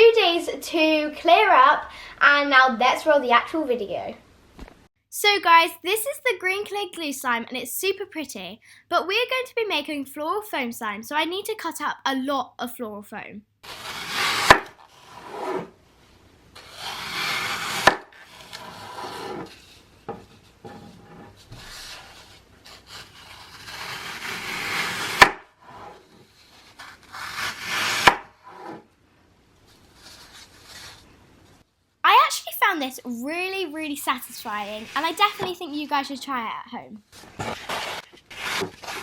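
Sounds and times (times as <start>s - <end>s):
blade scraping through foam: 13.6s - 15.8s, 16.6s - 28.9s, 29.6s - 31.1s, 34.2s - 35.7s, 37.1s - 39.0s.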